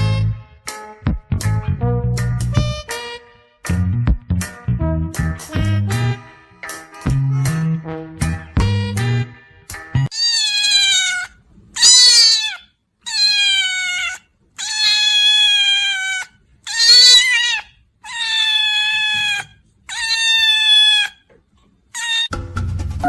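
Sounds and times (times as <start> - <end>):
cat meowing: 10.1 - 21.2, 21.9 - 22.3.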